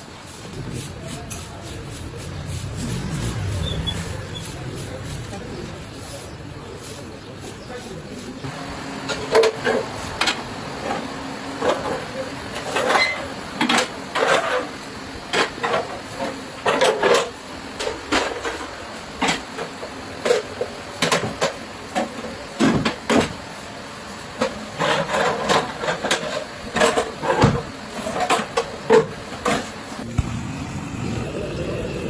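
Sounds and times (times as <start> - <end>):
metal spatula scraping griddle: 0.0 - 8.3, 12.6 - 17.3, 24.4 - 29.8
frying hiss: 0.0 - 32.0.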